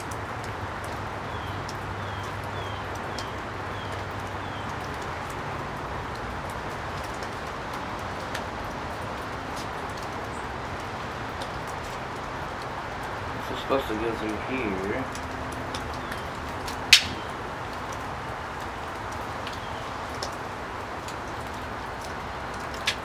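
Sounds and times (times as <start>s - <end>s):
background hiss: 11.8s - 23.0s
bird chirping: 13.3s - 17.6s.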